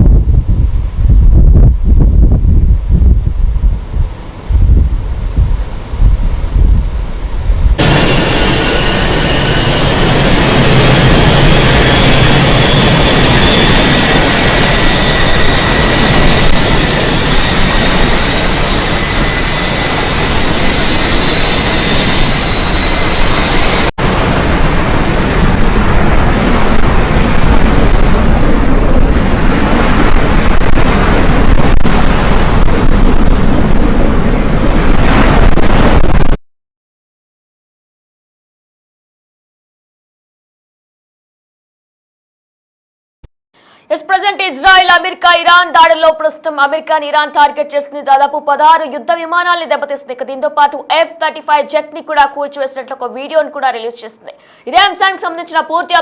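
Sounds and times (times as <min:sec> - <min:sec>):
jet engine roar with whine: 0:00.0 - 0:36.4.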